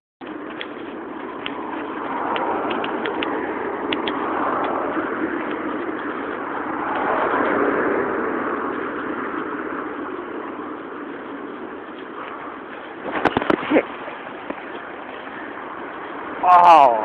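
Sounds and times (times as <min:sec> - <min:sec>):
strong gusty wind: 0:00.2 - 0:17.0
light ticks: 0:00.4 - 0:04.8.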